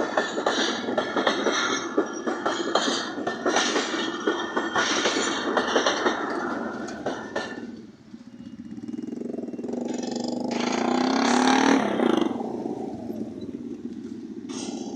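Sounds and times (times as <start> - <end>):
steady engine running: 6.2 - 14.9
motorcycle engine passing: 6.7 - 14.9.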